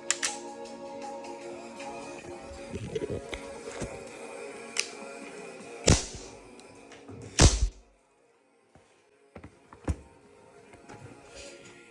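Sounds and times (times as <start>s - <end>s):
background music: 0.0s - 11.9s
small clicks: 0.1s - 0.4s
revolver firing: 5.9s - 6.4s, 7.4s - 7.8s.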